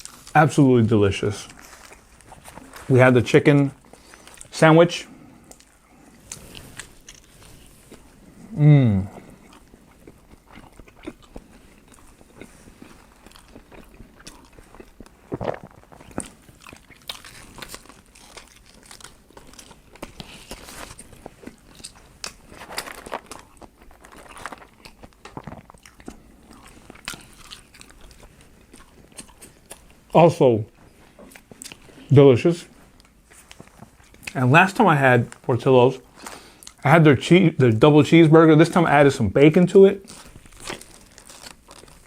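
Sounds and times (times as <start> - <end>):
person chewing: 0.0 - 0.4, 3.8 - 4.5, 5.1 - 30.1, 30.9 - 32.1, 32.9 - 34.4, 36.0 - 36.8, 40.0 - 42.0.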